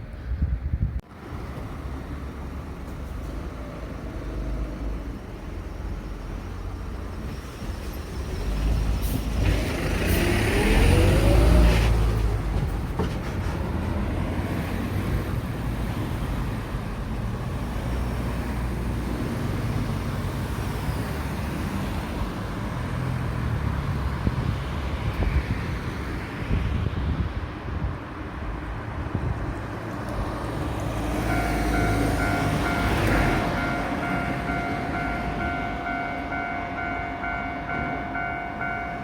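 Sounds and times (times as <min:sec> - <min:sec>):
road traffic passing: 0:00.0 - 0:39.0
vehicle accelerating past: 0:09.4 - 0:12.2.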